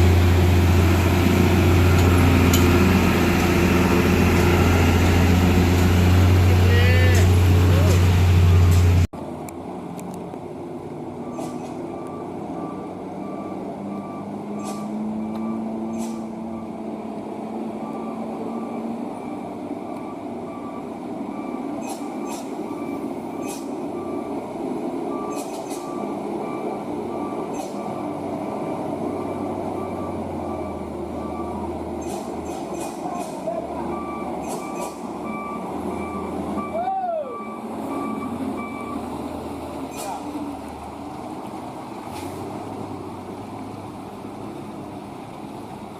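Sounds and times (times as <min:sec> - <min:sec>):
truck engine running: 0:00.0 - 0:45.9
back-up alarm beeping: 0:11.2 - 0:16.8, 0:17.8 - 0:24.4, 0:25.1 - 0:33.0, 0:33.9 - 0:39.0
sharp clicks: 0:25.3 - 0:25.9, 0:32.0 - 0:33.4.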